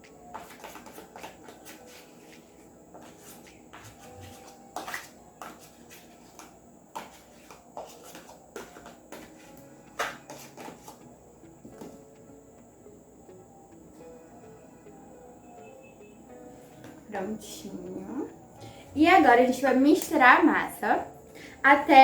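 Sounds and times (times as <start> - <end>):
faint background music: 0.0 - 22.0
utensil scraping a bowl: 3.0 - 11.0.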